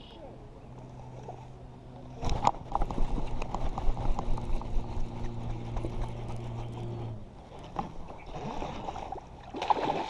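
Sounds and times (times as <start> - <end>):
steady low hum: 0.0 - 9.5.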